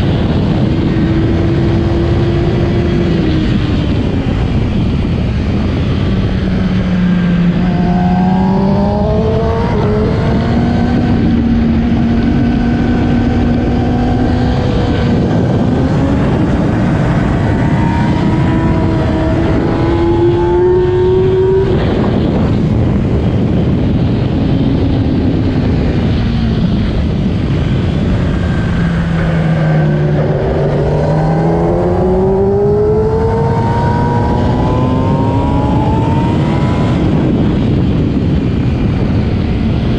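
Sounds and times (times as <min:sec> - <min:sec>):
motorcycle engine shifting gears: 0:00.0 - 0:39.8.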